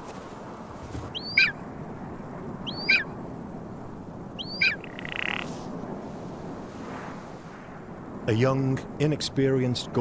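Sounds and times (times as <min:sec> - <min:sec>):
wind: 0:00.0 - 0:10.0
bird calls: 0:01.1 - 0:01.6, 0:02.6 - 0:03.2, 0:04.4 - 0:05.6.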